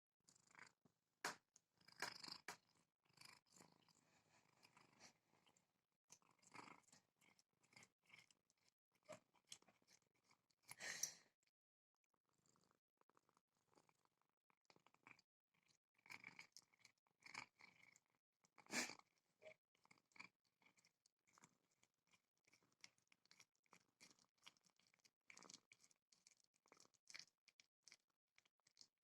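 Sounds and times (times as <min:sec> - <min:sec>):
cat purring: 0:00.3 - 0:00.8, 0:01.8 - 0:08.3.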